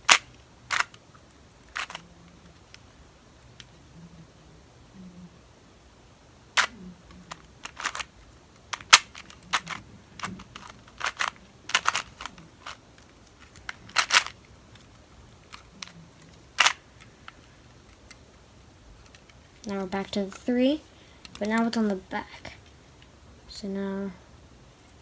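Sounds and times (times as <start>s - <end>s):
plastic puzzle cube clicks: 0.0s - 1.0s, 1.6s - 2.8s, 6.6s - 18.3s.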